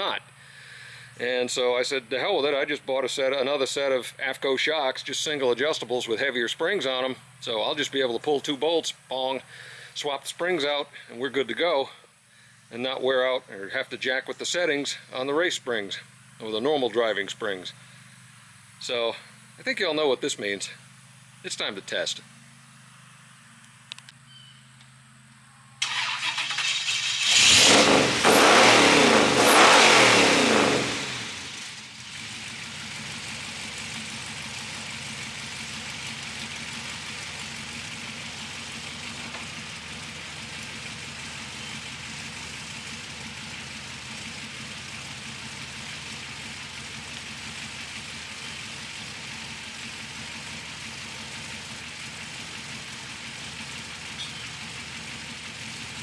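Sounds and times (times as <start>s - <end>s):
race car engine revving: 25.8s - 56.0s.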